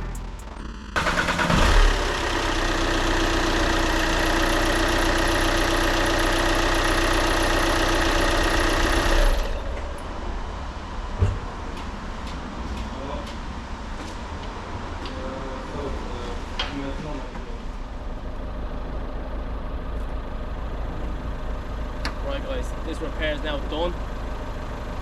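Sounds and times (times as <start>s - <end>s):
diesel engine running: 0.0s - 11.1s, 17.7s - 25.0s.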